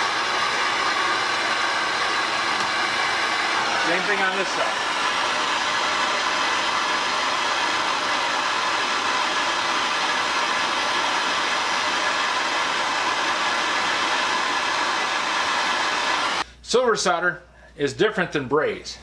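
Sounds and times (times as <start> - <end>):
gas torch flame hissing: 0.0 - 16.4.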